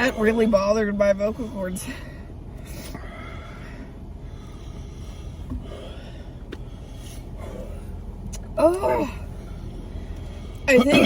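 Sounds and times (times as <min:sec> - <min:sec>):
steady low hum: 0:00.0 - 0:11.0
person breathing hard: 0:01.8 - 0:08.2.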